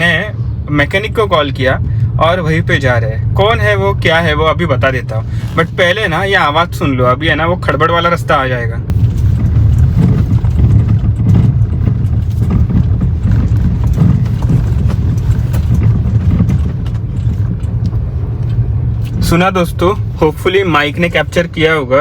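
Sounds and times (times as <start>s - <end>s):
tyres rumbling on rough road: 0.0s - 22.0s
suspension knocking: 8.9s - 21.4s.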